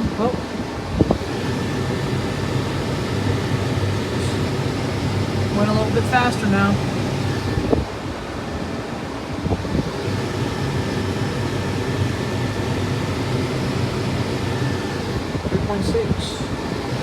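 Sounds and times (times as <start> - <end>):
combine harvester low drone: 0.0 - 17.0
faint high whine: 0.0 - 17.0.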